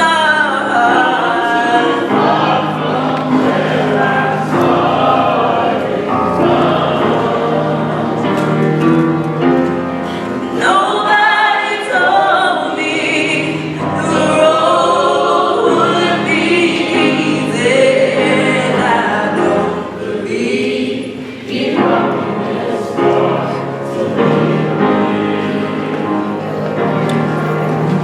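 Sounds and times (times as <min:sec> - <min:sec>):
gospel choir singing: 0:00.0 - 0:28.0
held low accompaniment notes: 0:21.5 - 0:28.0.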